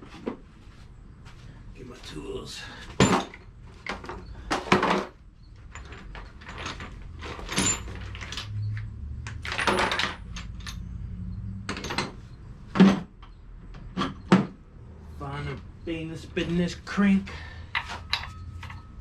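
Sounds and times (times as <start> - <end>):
metal hand tools clattering: 17.3 - 19.0.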